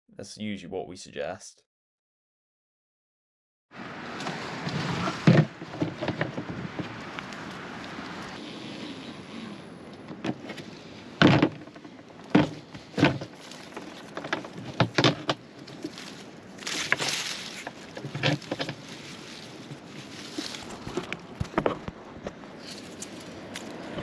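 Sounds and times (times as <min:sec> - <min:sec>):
scraping rustle: 0:04.0 - 0:24.0
knocks and clunks: 0:04.2 - 0:07.3, 0:11.2 - 0:15.9, 0:20.8 - 0:22.4.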